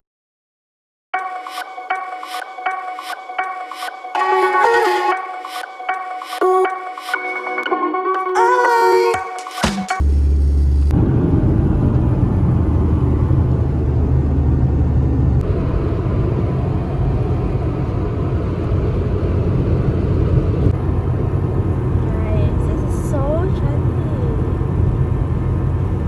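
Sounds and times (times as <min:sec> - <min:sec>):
heavy low boom: 0:10.0 - 0:22.2
vehicle rumble and road noise: 0:10.0 - 0:26.0.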